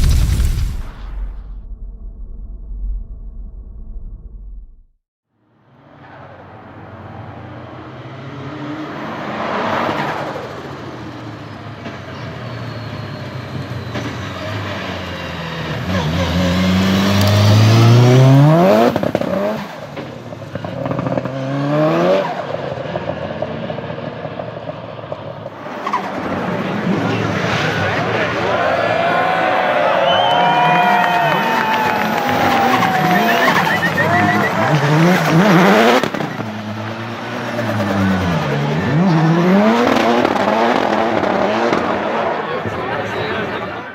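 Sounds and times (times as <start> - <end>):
car engine revving hard: 15.6 - 19.8, 20.6 - 22.6, 30.8 - 42.6.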